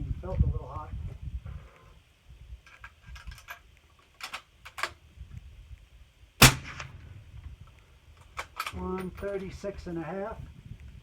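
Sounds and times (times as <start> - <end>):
suppressed rifle shot: 6.4 - 7.2.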